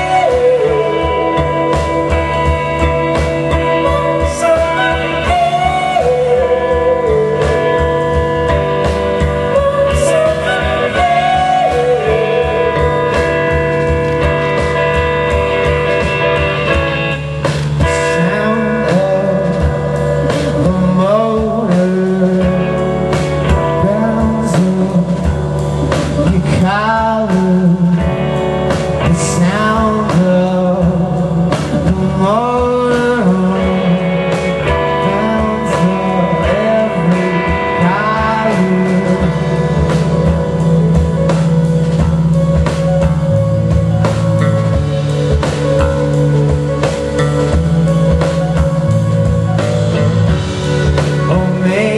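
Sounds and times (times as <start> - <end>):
guitar: 0.0 - 51.9
person singing: 0.0 - 51.9.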